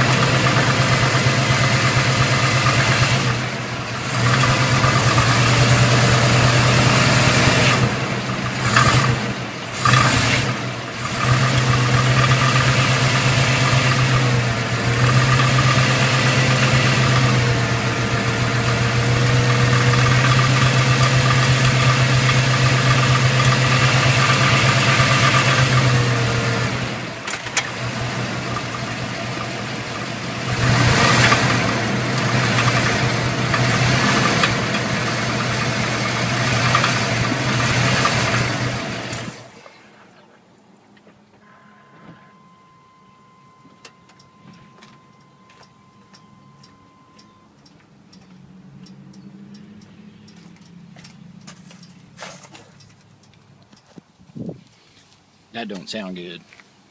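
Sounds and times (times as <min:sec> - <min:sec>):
rhythmic engine knock: 0:00.0 - 0:03.4, 0:04.1 - 0:07.4, 0:11.0 - 0:26.2, 0:28.4 - 0:38.7
engine running: 0:00.0 - 0:53.8.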